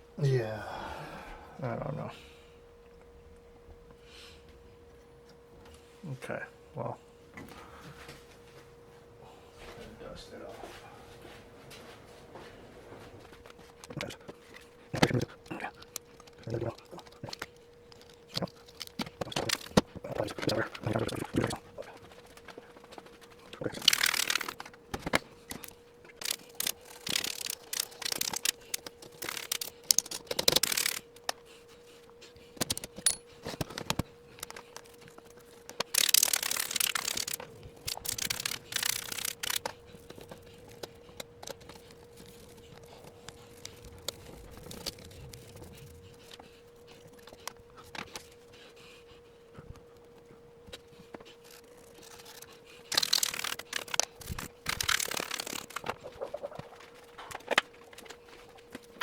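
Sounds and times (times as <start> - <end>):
faint steady hum: 0.0 - 59.0
hand scrubbing typewriter: 18.0 - 31.4, 32.4 - 46.4, 51.4 - 59.0.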